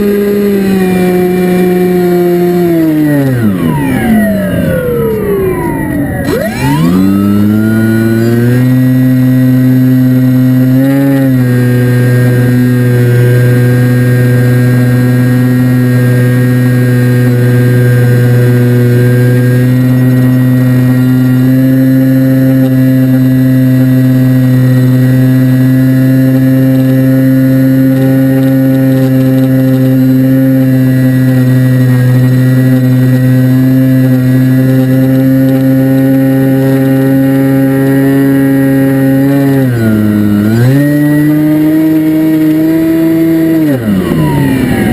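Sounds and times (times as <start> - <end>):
model aircraft propeller whine: 0.0 - 44.9.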